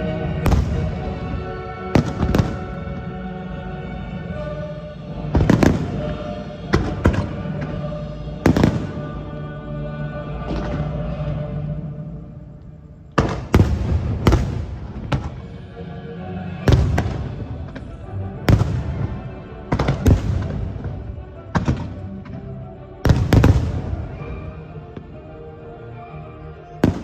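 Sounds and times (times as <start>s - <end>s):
music: 0.0s - 27.0s
fireworks bangs and crackle: 0.1s - 3.0s, 5.2s - 9.2s, 13.2s - 15.6s, 16.6s - 25.1s.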